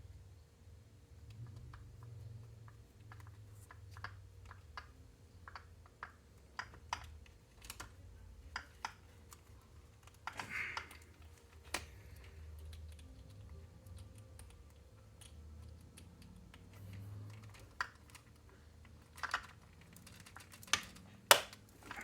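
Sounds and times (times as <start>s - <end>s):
small parts and tools clicking: 1.2s - 22.0s.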